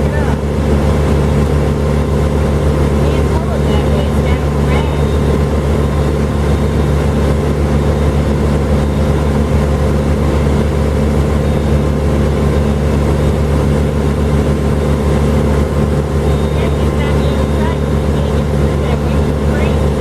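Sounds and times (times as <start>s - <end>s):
large engine droning: 0.0s - 20.0s.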